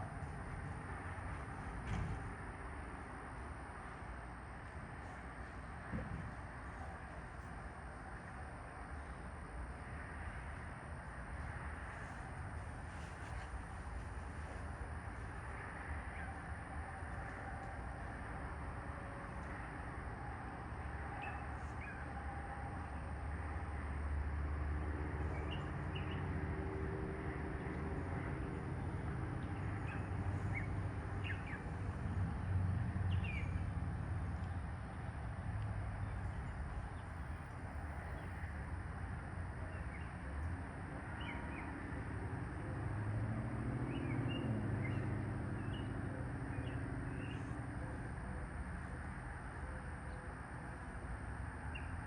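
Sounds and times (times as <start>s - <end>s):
low rumble with faint hum: 0.0s - 52.0s.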